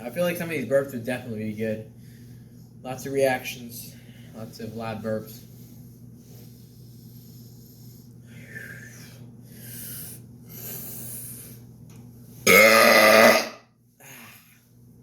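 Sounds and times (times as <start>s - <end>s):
man burping loudly: 12.5s - 13.6s.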